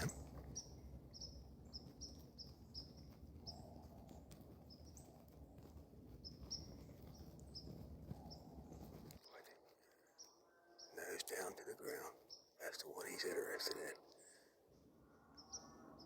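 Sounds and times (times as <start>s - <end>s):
small animal chirping: 0.0s - 3.8s.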